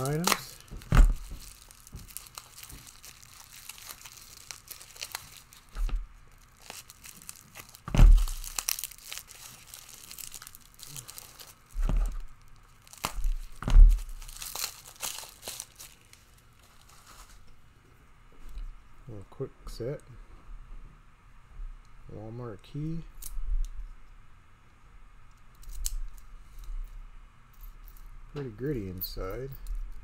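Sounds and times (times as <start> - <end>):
packaging crinkling and tearing: 0.0 - 17.5.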